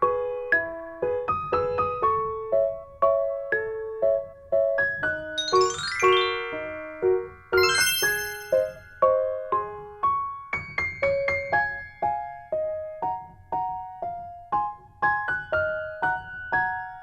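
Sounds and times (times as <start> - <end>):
gentle electric piano melody: 5.4 - 8.7.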